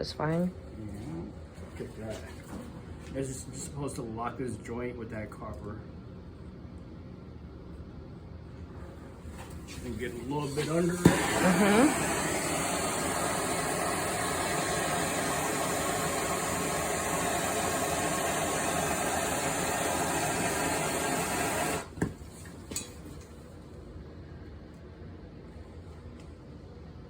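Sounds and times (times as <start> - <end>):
gas torch flame hissing: 9.7 - 22.9.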